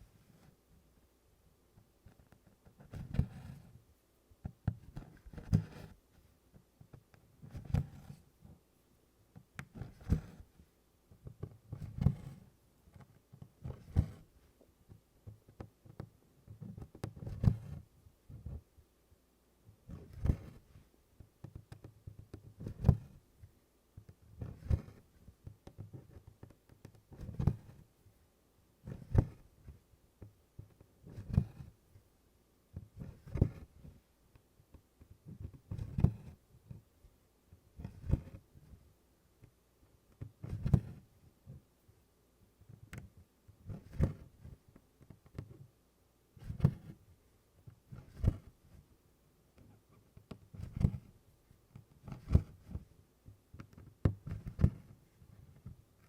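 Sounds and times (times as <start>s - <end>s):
needle stitching taut canvas: 2.0s - 3.8s, 4.4s - 8.3s, 9.3s - 10.6s, 11.2s - 18.7s, 19.8s - 23.3s, 24.0s - 27.9s, 28.8s - 31.8s, 32.7s - 36.9s, 37.5s - 38.8s, 40.1s - 41.6s, 42.6s - 45.7s, 46.4s - 48.9s, 49.6s - 56.0s
thread rasping: 24.0s - 27.9s, 32.8s - 34.0s, 35.0s - 36.8s, 37.8s - 38.5s, 49.6s - 51.1s, 53.5s - 55.0s.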